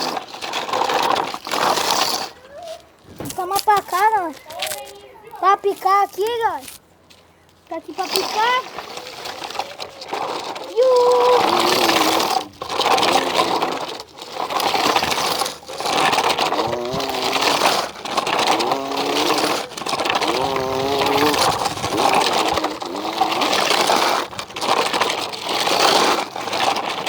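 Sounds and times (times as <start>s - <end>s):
boy imitating engine with mouth: 7.7s - 27.0s.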